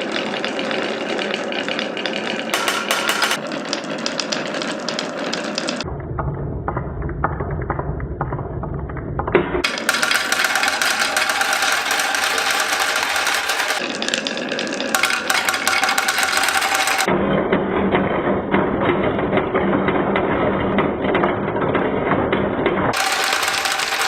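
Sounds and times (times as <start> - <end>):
marbles rattling down tracks: 0.0 - 5.9, 9.6 - 17.1, 22.9 - 24.0
low rumble: 5.9 - 9.6.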